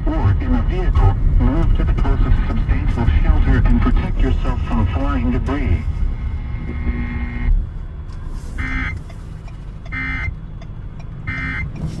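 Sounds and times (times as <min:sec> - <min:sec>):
steady low rumble: 0:00.0 - 0:12.0
held tone: 0:08.6 - 0:09.0.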